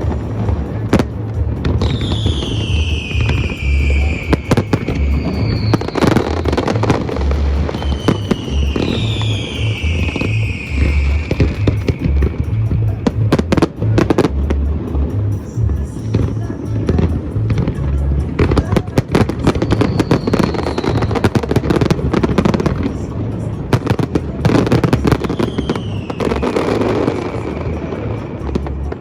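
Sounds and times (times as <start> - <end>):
fireworks bangs and crackling: 0.0 - 29.0
music with heavy bass beat: 0.0 - 29.0
falling whistling tones: 1.8 - 13.1, 19.4 - 21.8, 25.1 - 28.4.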